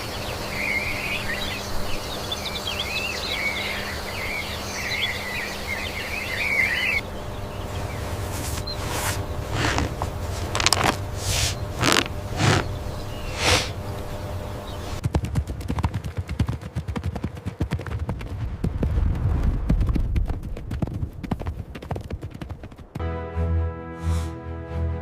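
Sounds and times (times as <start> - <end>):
horse hooves clattering: 7.8 - 11.1, 11.8 - 12.8, 15.0 - 23.0.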